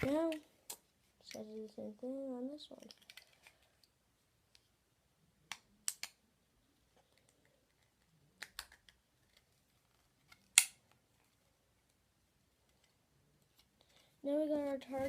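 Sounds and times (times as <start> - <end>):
plastic toy parts clicking together: 2.8 - 3.6, 5.8 - 6.2, 10.3 - 10.8.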